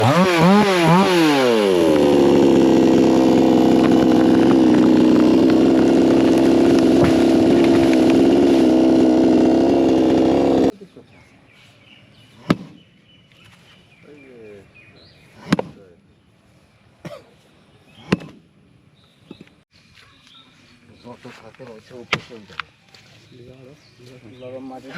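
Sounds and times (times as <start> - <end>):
chainsaw revving: 0.0 - 10.8.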